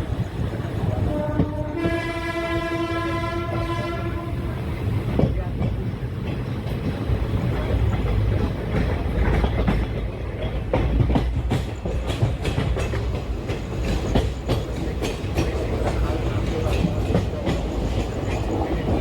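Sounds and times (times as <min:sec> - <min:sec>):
train rumble: 0:00.0 - 0:19.0
wheels clacking over rail joints: 0:04.8 - 0:19.0.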